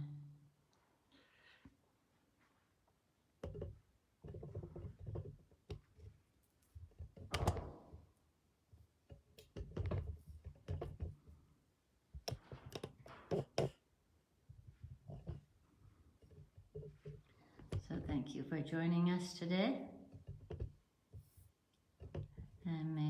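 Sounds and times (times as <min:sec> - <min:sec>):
knocks and thumps in a room: 0:03.4 - 0:08.3.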